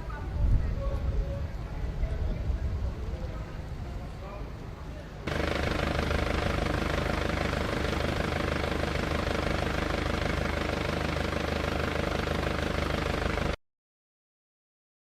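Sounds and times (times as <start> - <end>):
helicopter rotor flutter: 5.3 - 13.6.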